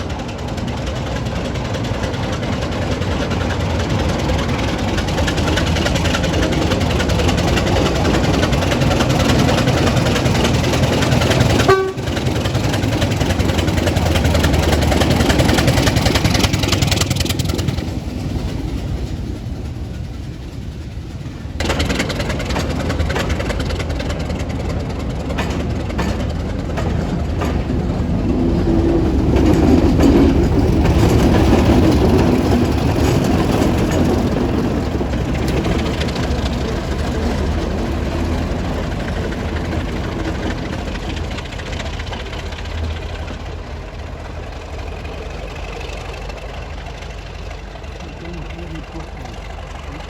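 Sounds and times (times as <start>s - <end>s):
diesel locomotive engine running: 0.0s - 50.0s.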